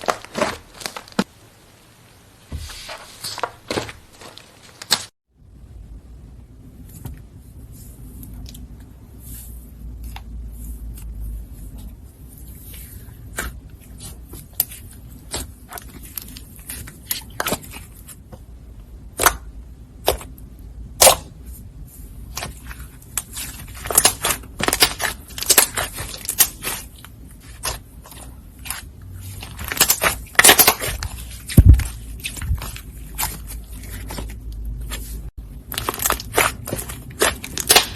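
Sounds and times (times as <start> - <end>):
slime squishing with pops: 12.6 - 18.3, 19.0 - 21.5, 22.3 - 37.9.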